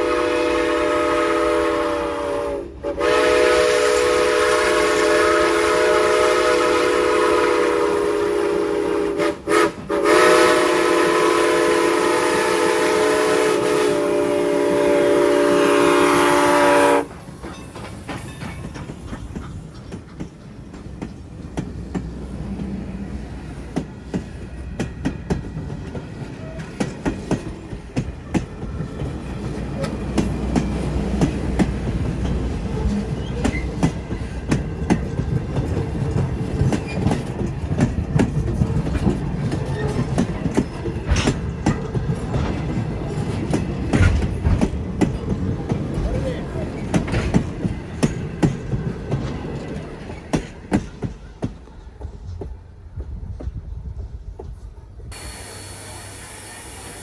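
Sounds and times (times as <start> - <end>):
steam locomotive whistle: 0.0 - 17.1, 55.1 - 57.0
low train rumble: 0.0 - 57.0
train wheels clicking over rail joints: 16.9 - 57.0.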